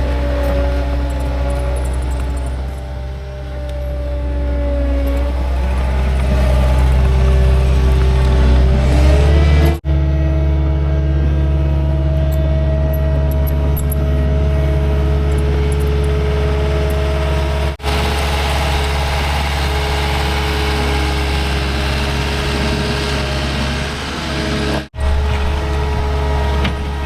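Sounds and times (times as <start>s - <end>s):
loader diesel engine at high revs: 0.0s - 27.0s.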